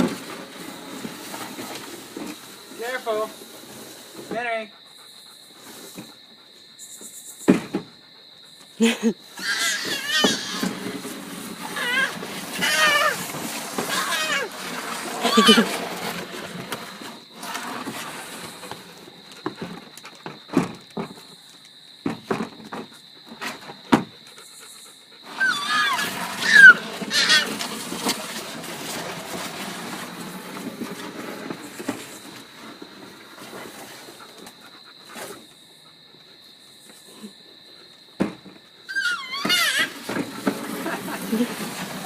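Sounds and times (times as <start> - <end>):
high sliding squeals: 9.4 - 18.8, 25.2 - 32.3, 38.9 - 42.0
toddler making animal sounds: 13.9 - 14.5, 15.2 - 15.7.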